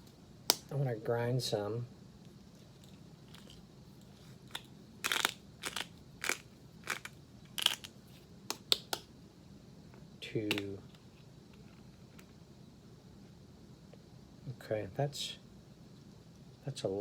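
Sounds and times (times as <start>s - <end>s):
spice grinder crunching: 2.6s - 8.9s.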